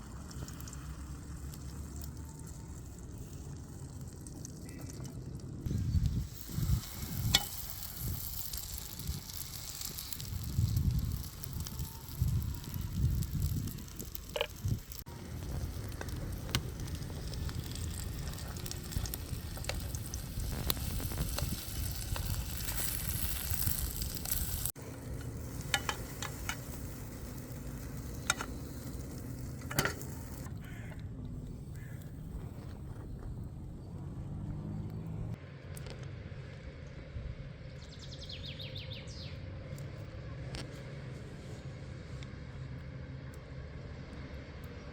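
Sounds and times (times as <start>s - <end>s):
food sizzling over open fire: 0.0s - 33.0s
fire crackling: 0.0s - 36.0s.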